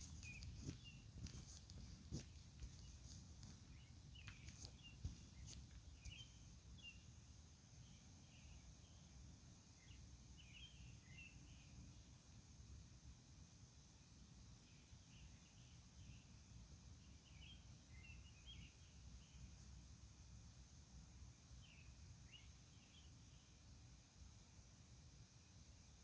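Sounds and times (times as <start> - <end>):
faint ticks: 0.0 - 6.2.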